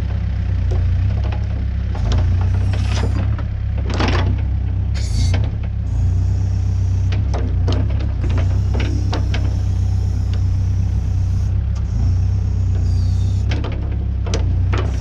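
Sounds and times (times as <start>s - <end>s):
diesel engine droning: 0.0s - 15.0s.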